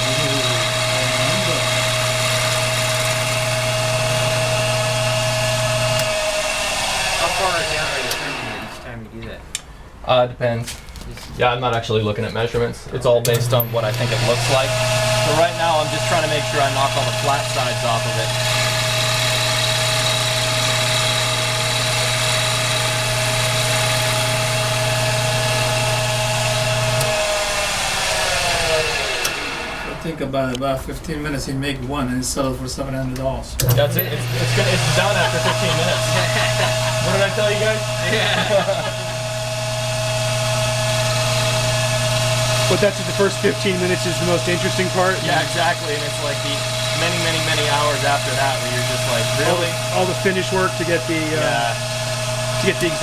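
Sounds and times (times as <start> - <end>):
lathe running with a whine: 0.0 - 8.9, 13.3 - 30.2, 33.6 - 53.0.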